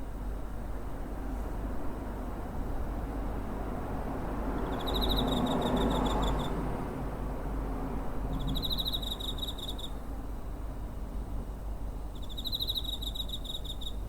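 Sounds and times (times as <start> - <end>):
cricket chirping trills: 4.4 - 6.6, 8.3 - 10.1, 12.0 - 14.0.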